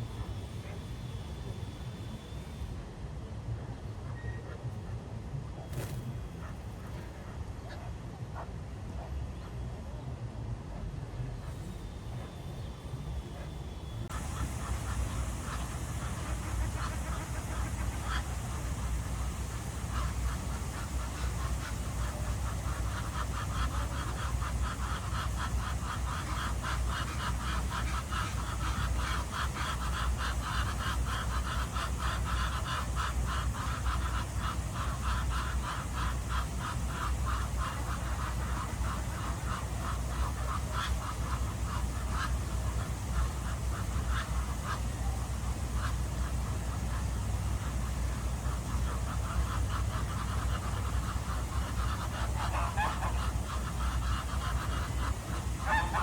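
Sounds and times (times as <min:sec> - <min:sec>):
low background rumble: 0:00.0 - 0:56.0
ducks quacking: 0:14.1 - 0:56.0.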